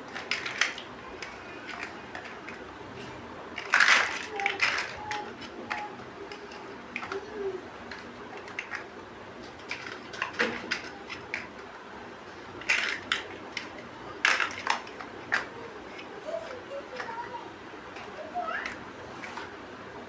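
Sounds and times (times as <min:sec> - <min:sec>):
plastic bricks clicking: 0:00.1 - 0:02.6, 0:03.6 - 0:07.3, 0:09.5 - 0:11.8, 0:12.6 - 0:17.2.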